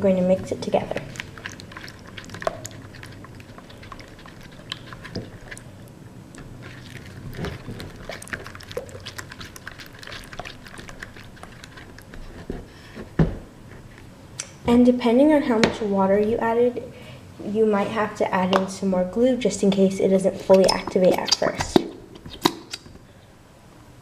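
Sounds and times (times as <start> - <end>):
sticky wet slime clicking: 0.9 - 5.7.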